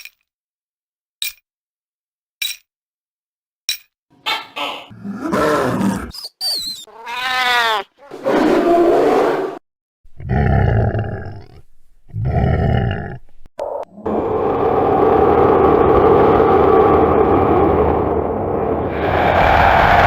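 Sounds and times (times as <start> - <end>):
monster roars and growls: 4.9 - 6.1, 10.2 - 13.2, 14.0 - 20.0.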